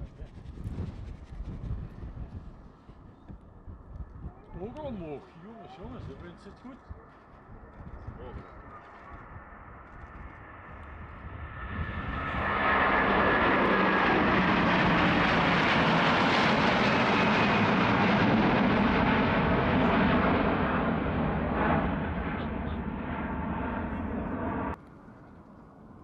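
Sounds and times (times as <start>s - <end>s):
jet airliner engine roar: 5.7s - 26.0s.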